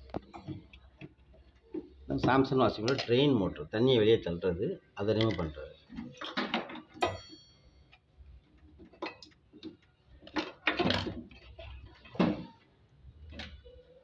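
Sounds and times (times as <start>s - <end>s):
ringing metal clink: 7.0s - 7.9s.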